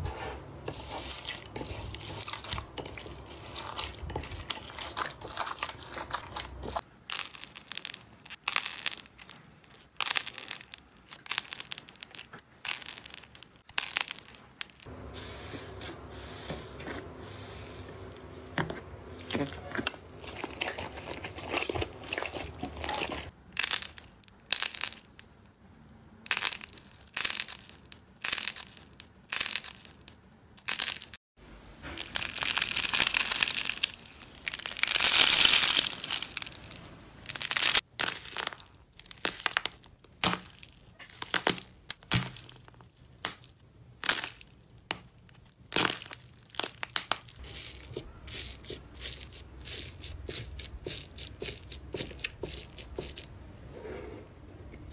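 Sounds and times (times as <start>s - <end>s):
crunchy slime crackling: 0.8s - 14.9s, 19.2s - 25.4s, 26.3s - 31.2s, 31.8s - 53.3s.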